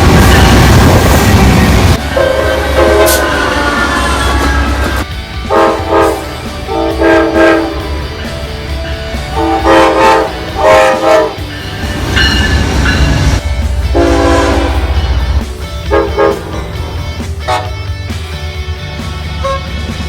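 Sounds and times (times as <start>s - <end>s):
passing train rumble: 0.0s - 20.0s
train horn blasts: 2.0s - 8.1s, 9.2s - 11.5s, 13.9s - 15.2s, 15.8s - 17.9s, 19.4s - 19.8s.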